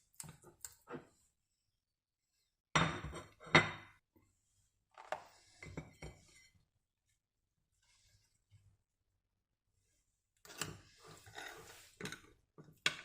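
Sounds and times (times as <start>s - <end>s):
kitchenware clinking and tapping: 2.8s - 4.0s.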